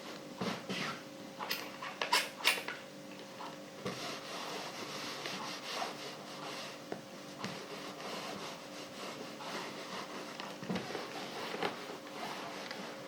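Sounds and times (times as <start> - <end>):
faint steady hum: 0.0 - 13.0
iron rubbing over fabric: 3.8 - 13.0.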